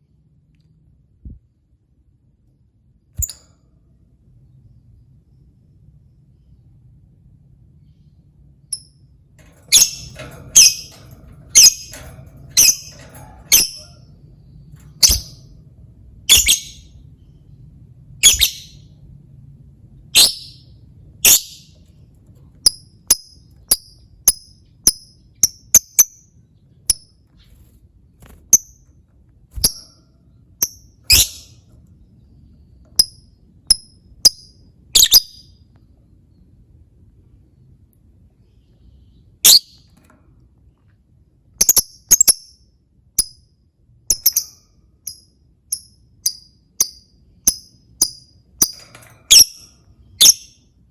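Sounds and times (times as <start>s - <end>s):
lovebird chirping: 9.7s - 12.0s, 12.6s - 14.0s, 15.0s - 15.4s, 16.3s - 17.0s, 18.2s - 18.9s, 20.2s - 21.8s, 30.6s - 31.6s, 33.0s - 35.6s, 39.4s - 39.8s, 41.6s - 42.6s, 44.1s - 50.6s.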